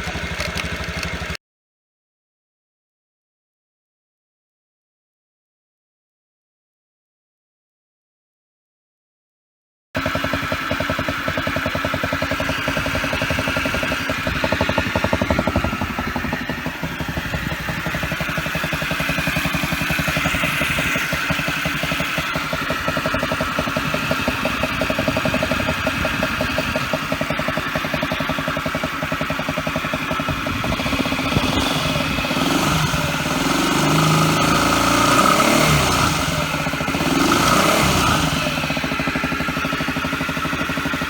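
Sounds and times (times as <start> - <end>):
abnormal engine noise: 0.0 - 1.4, 10.0 - 41.0
scooter engine idling: 0.0 - 1.4, 10.0 - 41.0.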